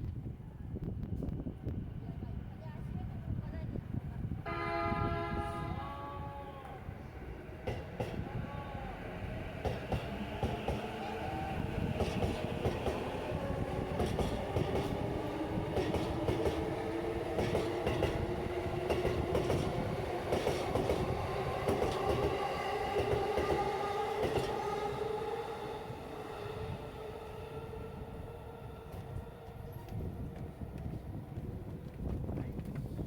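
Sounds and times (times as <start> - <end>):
electric train hum: 0.0 - 33.0
train rumble: 0.0 - 33.0
train wheels clicking over rail joints: 9.5 - 24.7.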